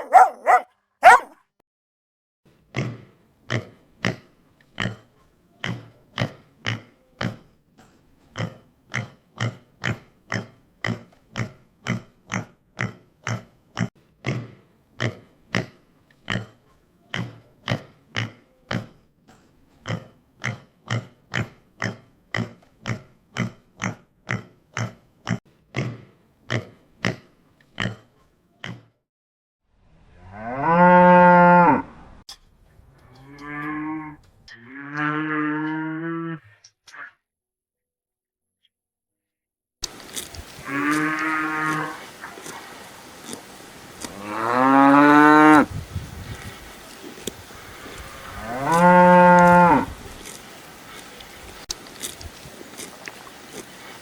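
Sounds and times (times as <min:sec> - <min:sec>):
farm animal short calls: 0:00.0 - 0:01.3, 0:40.0 - 0:45.7
long steady moo: 0:30.2 - 0:31.9, 0:33.1 - 0:36.6, 0:40.6 - 0:42.6, 0:44.0 - 0:45.7, 0:47.8 - 0:50.0.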